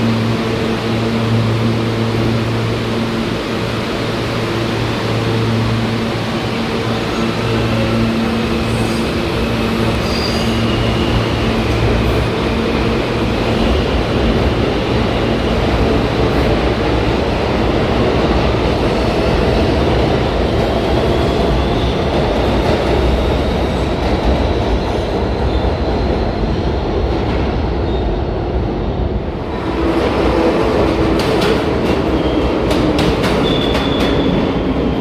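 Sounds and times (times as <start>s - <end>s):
subway train wheels rumbling: 0.0s - 35.0s
faint high squeal: 9.8s - 11.4s.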